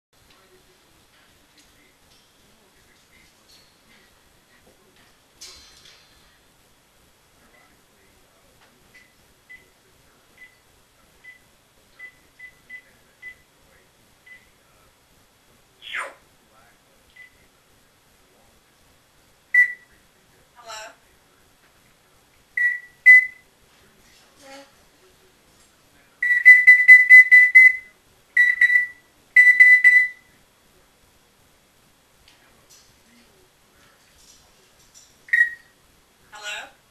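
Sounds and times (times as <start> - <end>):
parrot mimicking beeps: 26.2 - 30.2, 35.3 - 35.6.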